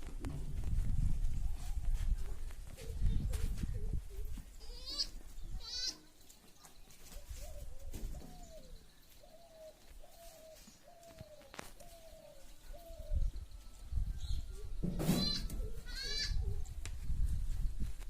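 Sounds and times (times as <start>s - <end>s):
dove cooing: 2.7s - 4.6s, 7.1s - 13.4s, 15.4s - 16.7s
goat bleating: 4.6s - 6.1s, 15.1s - 16.4s.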